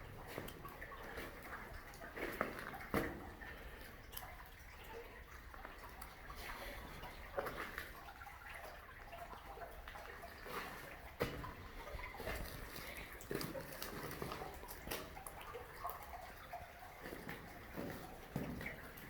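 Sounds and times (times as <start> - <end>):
water dripping and splashing: 0.0 - 19.0.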